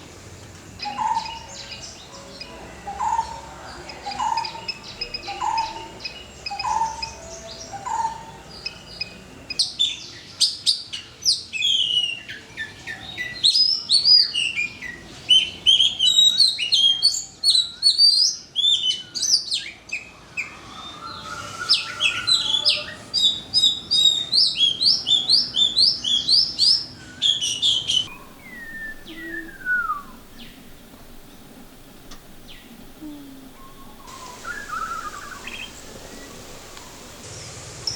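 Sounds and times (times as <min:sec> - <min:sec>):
descending whistled bird call: 0:11.0 - 0:37.9.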